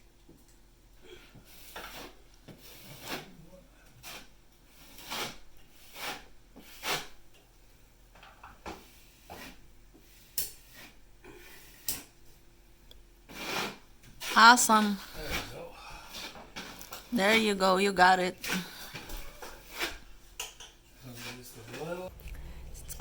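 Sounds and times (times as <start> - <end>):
fan parts scraping and knocking: 19.0 - 23.0.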